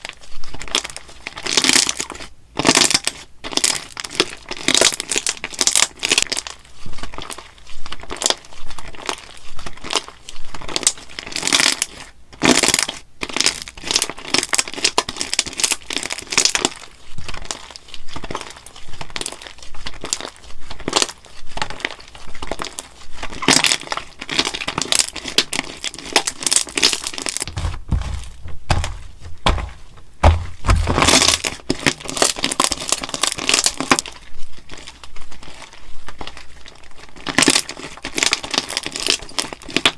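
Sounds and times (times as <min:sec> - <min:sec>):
slime crackling and popping: 0:00.0 - 0:39.9
deep thuds: 0:27.5 - 0:31.5.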